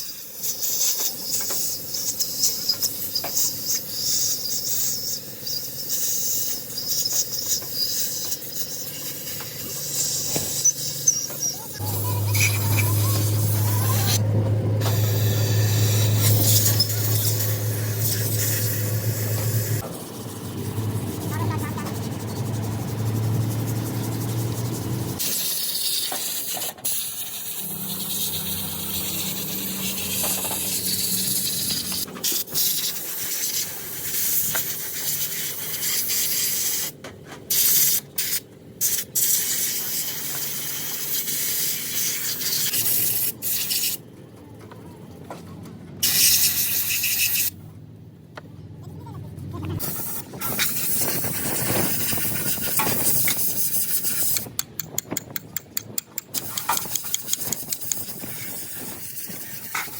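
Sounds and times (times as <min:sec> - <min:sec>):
hissing spray jet: 0:00.0 - 0:36.9, 0:49.8 - 0:54.5
steady low hum: 0:09.0 - 0:25.2.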